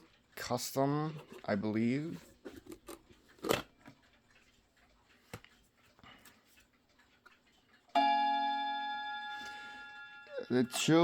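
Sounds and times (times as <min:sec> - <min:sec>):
clock chime rod ringing: 0:07.9 - 0:11.0.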